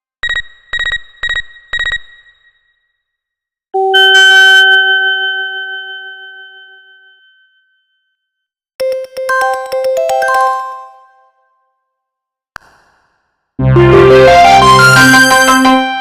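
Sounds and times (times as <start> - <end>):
synthesized bell-like chime: 3.8 - 11.6
ringtone melody: 8.8 - 11.4, 13.6 - 16.0.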